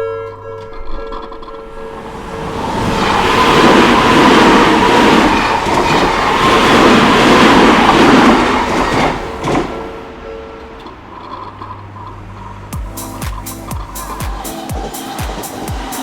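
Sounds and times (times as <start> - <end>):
electric train passing: 1.5 - 16.0
crossing bell ringing: 12.8 - 16.0.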